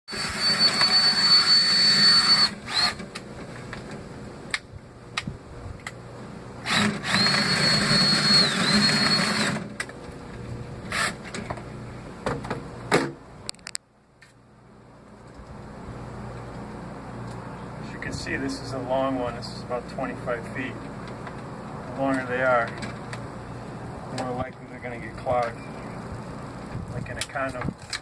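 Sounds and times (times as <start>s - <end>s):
power drill whine: 0.1s - 3.1s, 6.6s - 9.7s, 10.9s - 11.4s.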